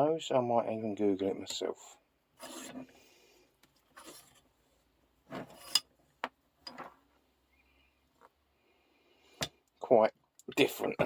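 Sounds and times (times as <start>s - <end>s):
metal vise scraping: 2.4s - 3.0s, 3.9s - 4.5s, 5.2s - 6.0s.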